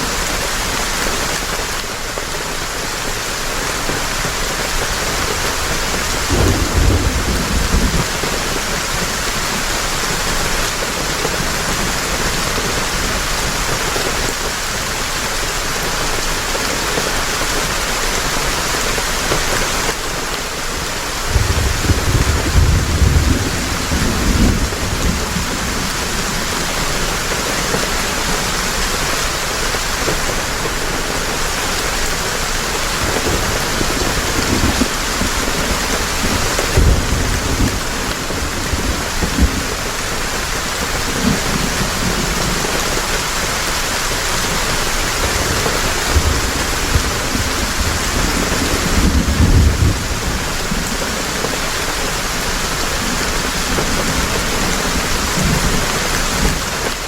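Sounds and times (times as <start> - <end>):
heavy rain falling: 0.0 - 57.0
low rolls of thunder: 6.0 - 10.6, 21.2 - 27.8, 33.0 - 42.8, 45.2 - 56.7.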